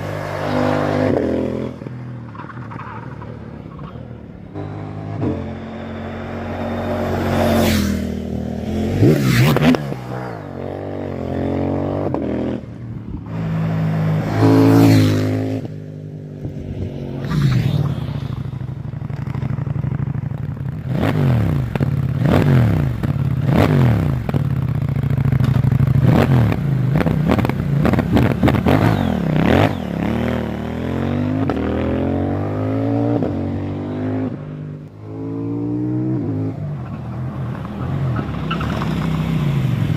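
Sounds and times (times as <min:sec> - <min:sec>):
motorcycle engine accelerating: 0:04.5 - 0:39.9.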